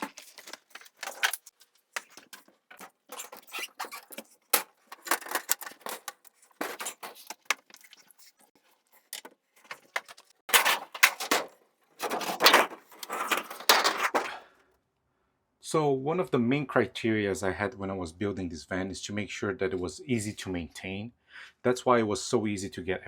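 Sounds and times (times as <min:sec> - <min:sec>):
equipment clicks and clanks: 0:00.0 - 0:07.7
scraping rattling noises: 0:00.0 - 0:14.4.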